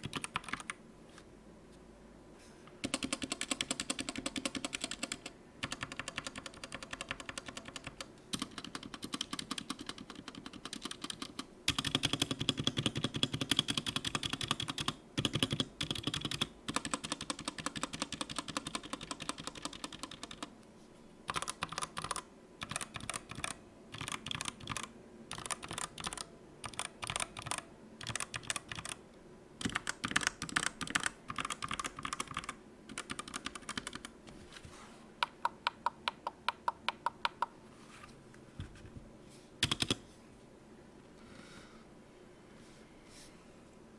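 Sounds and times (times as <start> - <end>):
typing on mechanical keyboard: 0.0 - 0.8, 2.8 - 20.5, 21.3 - 29.0, 29.6 - 34.1, 39.6 - 40.0.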